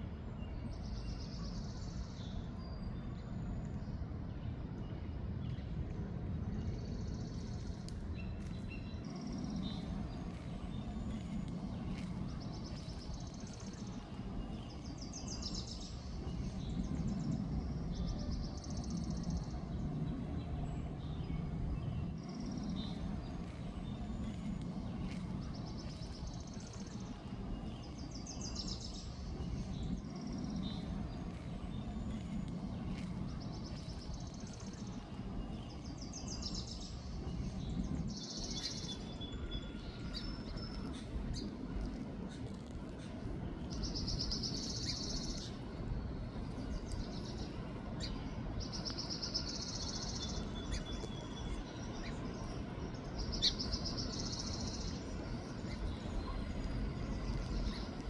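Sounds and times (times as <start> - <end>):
low background rumble: 0.0 - 58.0
songbird trilling: 38.1 - 58.0.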